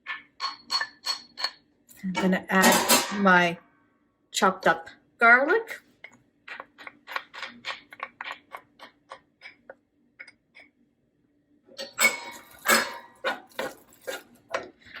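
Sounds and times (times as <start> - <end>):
utensil scraping pot: 6.5 - 9.8, 11.8 - 15.0.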